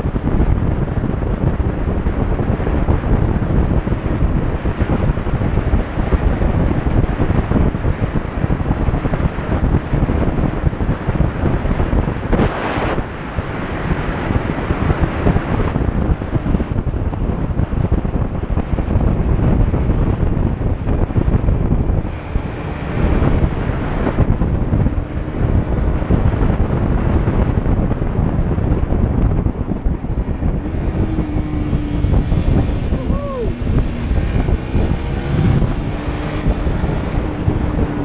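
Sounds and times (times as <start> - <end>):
wind buffeting microphone: 0.0 - 38.0
motorcycle engine running: 13.2 - 38.0.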